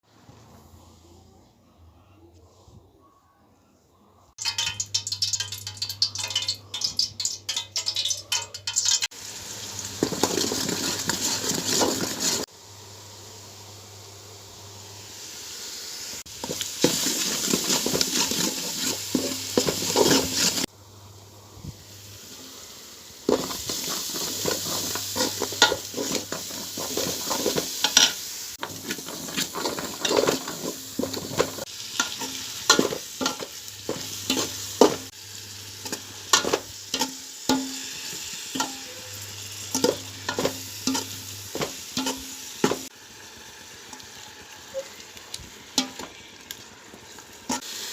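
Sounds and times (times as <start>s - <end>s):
food sizzling in oil: 4.4s - 47.9s
spoon stirring and scraping pot: 10.0s - 12.5s, 16.4s - 20.7s, 23.3s - 35.1s, 35.8s - 39.0s, 39.7s - 42.9s.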